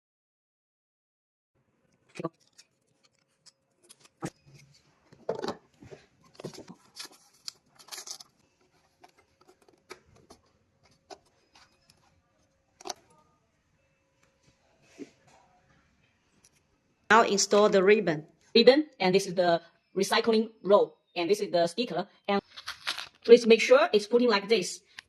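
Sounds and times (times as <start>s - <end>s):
label paper rustles and scrapes: 5.9s - 12.2s, 22.4s - 23.2s.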